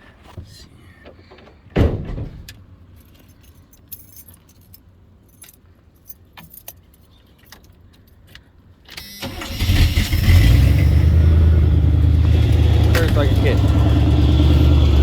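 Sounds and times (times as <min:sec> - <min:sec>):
keys jingling: 0:02.4 - 0:08.4
engine cranking and running: 0:09.0 - 0:15.0.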